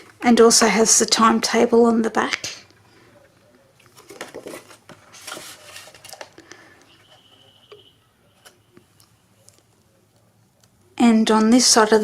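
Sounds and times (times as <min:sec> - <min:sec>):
paper rustling and tapping: 0:03.8 - 0:08.8.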